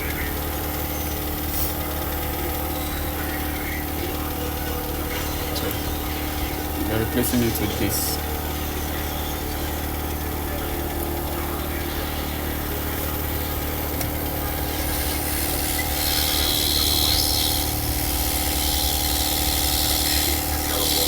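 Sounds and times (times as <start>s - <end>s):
hot air rework station blowing: 4.2s - 21.0s.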